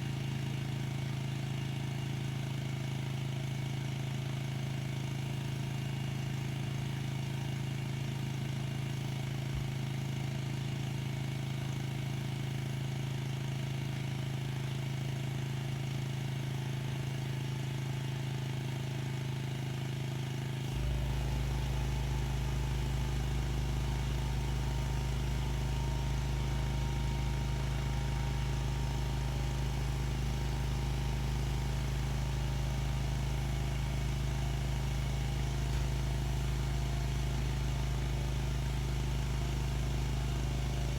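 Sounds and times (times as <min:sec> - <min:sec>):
pressure washer running: 0:20.6 - 0:40.9.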